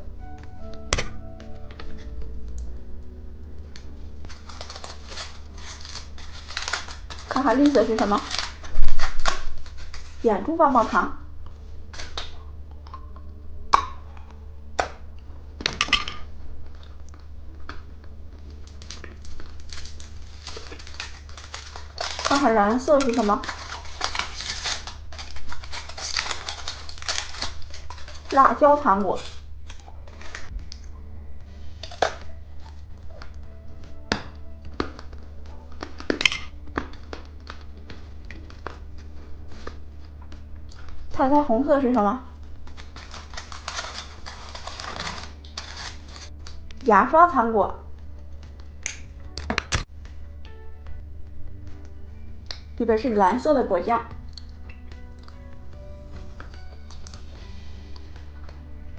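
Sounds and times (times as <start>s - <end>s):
soft background music: 0.0s - 58.9s
candy packaging crinkling: 3.6s - 30.9s, 31.7s - 50.0s
packaging snaps: 3.8s - 10.2s, 11.9s - 17.9s, 18.6s - 30.9s, 31.8s - 33.5s, 34.1s - 41.1s, 42.6s - 46.9s, 48.6s - 49.9s.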